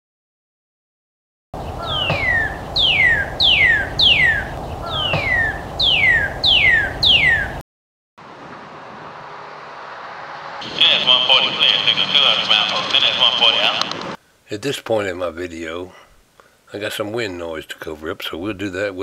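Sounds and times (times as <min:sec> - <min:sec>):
bird whistling falling notes: 0:01.8 - 0:07.6
steady low rumble: 0:10.6 - 0:14.2.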